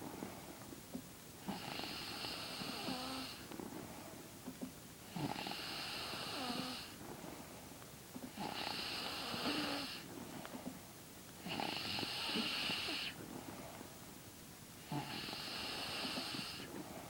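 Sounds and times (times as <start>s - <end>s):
person snoring: 1.5s - 3.4s, 5.1s - 7.0s, 8.4s - 10.0s.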